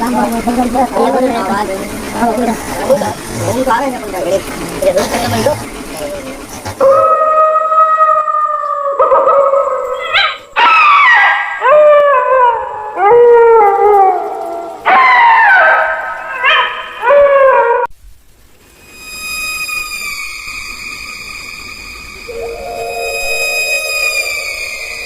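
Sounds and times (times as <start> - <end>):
dog howling: 6.8 - 17.9, 22.3 - 25.0.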